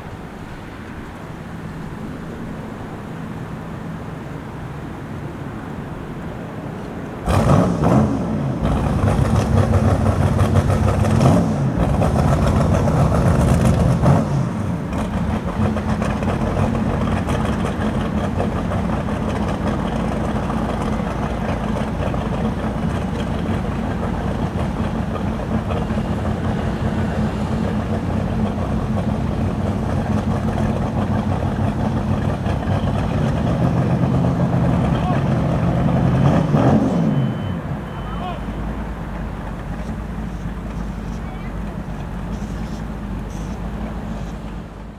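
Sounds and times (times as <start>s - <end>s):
engine revving and running: 7.2s - 37.8s.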